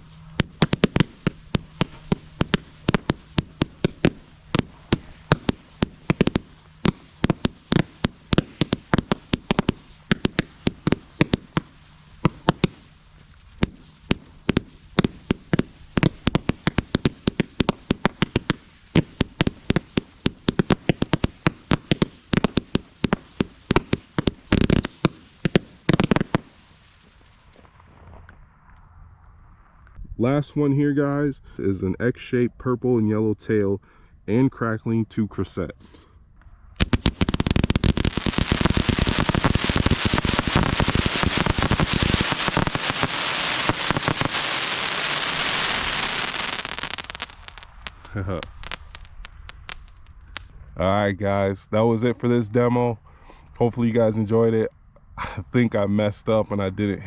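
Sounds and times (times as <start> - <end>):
firework cake pops and bangs: 0.0 - 12.9, 13.6 - 27.0, 36.8 - 50.5.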